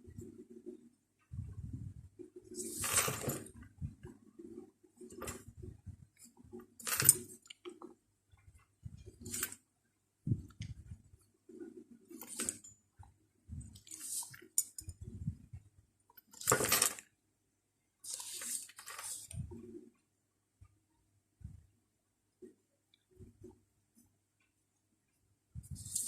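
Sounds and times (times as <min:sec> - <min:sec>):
brush rustling on paper: 0:18.1 - 0:19.4, 0:25.6 - 0:26.0.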